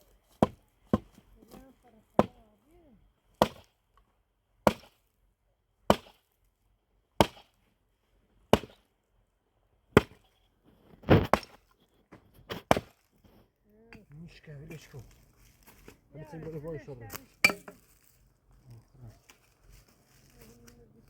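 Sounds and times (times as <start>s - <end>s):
axe chopping firewood: 0.3s - 2.4s, 3.3s - 3.8s, 4.6s - 5.1s, 5.8s - 6.3s, 7.2s - 7.6s, 8.4s - 8.9s, 9.9s - 10.3s, 11.0s - 13.2s, 15.6s - 17.9s.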